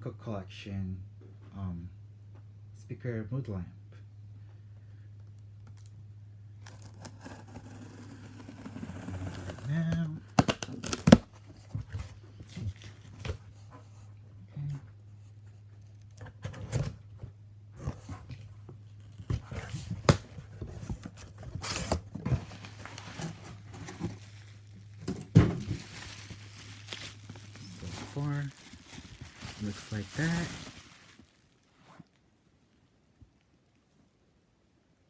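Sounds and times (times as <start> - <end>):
low electrical hum: 0.0 - 35.0
packaging ripping: 6.6 - 11.3, 21.0 - 31.7
packaging crinkling: 10.3 - 11.4, 20.8 - 32.2.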